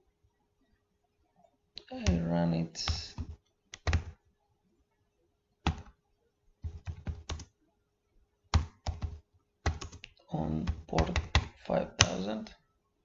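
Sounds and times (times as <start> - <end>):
computer keyboard keystrokes: 2.8 - 4.2, 5.7 - 5.9, 6.6 - 7.5, 8.5 - 12.2.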